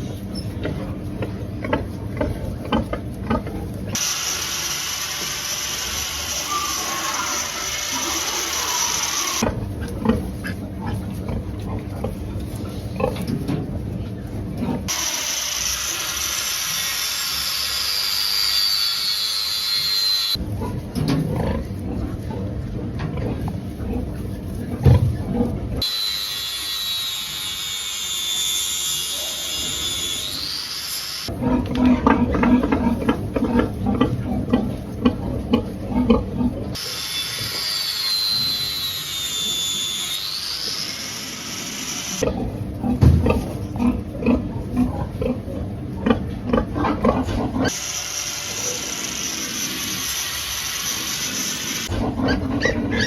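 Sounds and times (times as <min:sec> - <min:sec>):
pigs grunting: 0:00.0 - 0:04.0, 0:06.2 - 0:15.3, 0:20.4 - 0:25.8, 0:31.2 - 0:37.0, 0:42.2 - 0:47.8, 0:51.8 - 0:53.0
power tool whining: 0:03.9 - 0:09.4, 0:14.9 - 0:20.4, 0:25.8 - 0:31.3, 0:36.8 - 0:42.2, 0:47.7 - 0:51.9
high mechanical whine: 0:04.0 - 0:09.5, 0:36.8 - 0:42.3.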